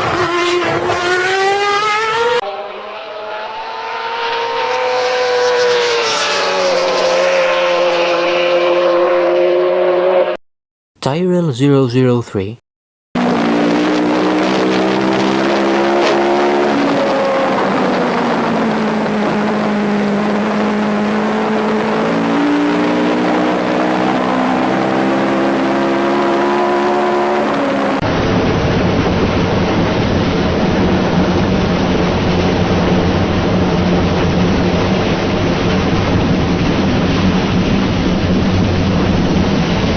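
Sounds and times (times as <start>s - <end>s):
racing car engine revving: 0.0s - 10.4s, 13.2s - 28.0s
rough dull engine noise: 13.2s - 28.0s.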